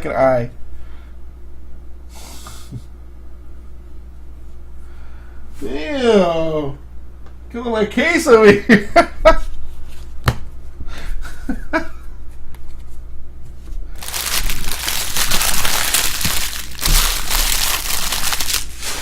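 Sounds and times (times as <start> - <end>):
plastic wrappers crinkling: 14.0 - 19.0.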